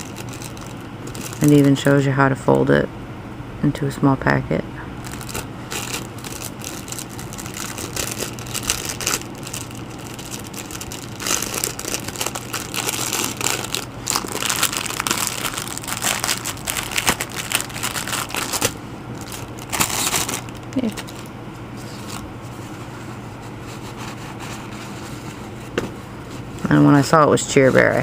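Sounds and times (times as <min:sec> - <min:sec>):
plastic packaging crinkling: 0:00.0 - 0:02.0, 0:05.0 - 0:22.2.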